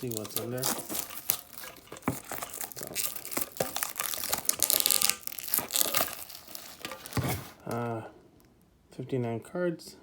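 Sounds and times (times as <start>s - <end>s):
plastic wrapping crinkling and tearing: 0.0s - 7.9s.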